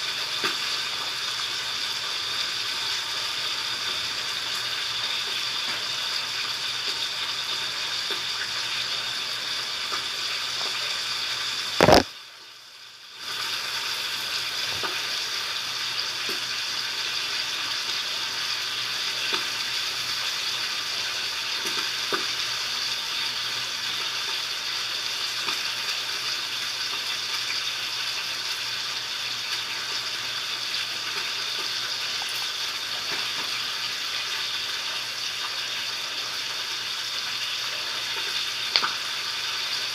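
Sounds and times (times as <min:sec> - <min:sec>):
slime crackling and popping: 0:11.8 - 0:12.0.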